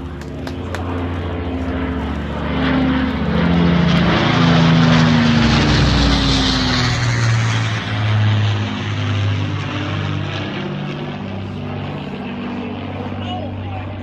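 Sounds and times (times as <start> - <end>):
propeller plane passing: 0.0 - 14.0.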